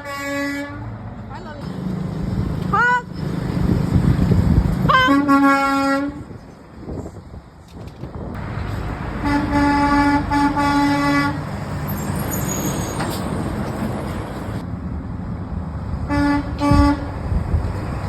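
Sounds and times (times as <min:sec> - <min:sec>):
truck horn honking: 0:00.0 - 0:00.9, 0:02.7 - 0:03.2, 0:04.8 - 0:06.3, 0:09.2 - 0:11.6, 0:16.1 - 0:17.1
passing traffic rumble: 0:00.0 - 0:18.0.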